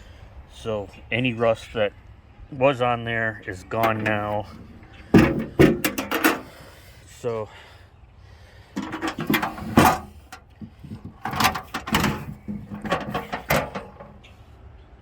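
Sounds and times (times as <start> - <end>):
metal toolbox clanking: 3.6 - 6.6, 8.8 - 14.3.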